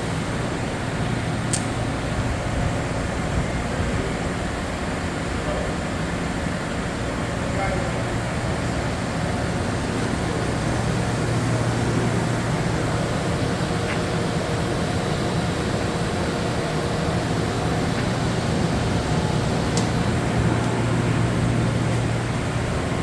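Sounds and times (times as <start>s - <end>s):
milling machine running: 7.9s - 23.0s.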